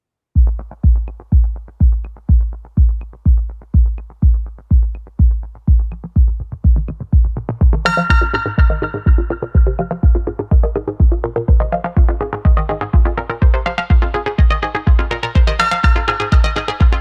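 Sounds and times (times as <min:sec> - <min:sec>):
thudding kick drum: 0:00.4 - 0:17.0
bright synth chords: 0:07.4 - 0:17.0.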